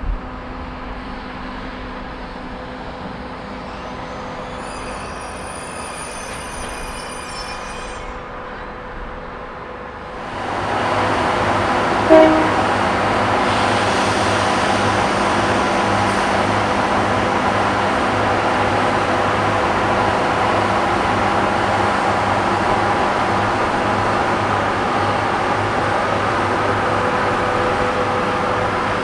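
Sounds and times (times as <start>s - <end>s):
train rolling on rails: 0.0s - 29.0s.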